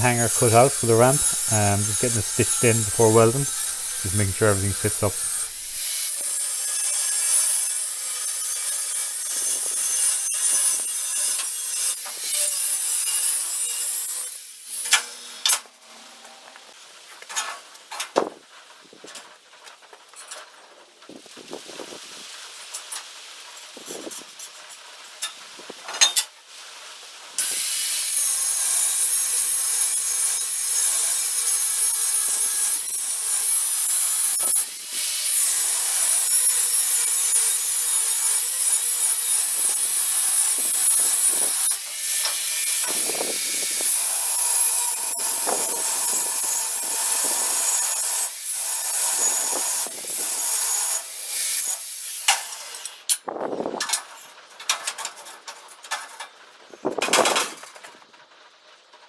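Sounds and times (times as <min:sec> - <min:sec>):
welding arc crackling hiss: 0:00.0 - 0:06.0.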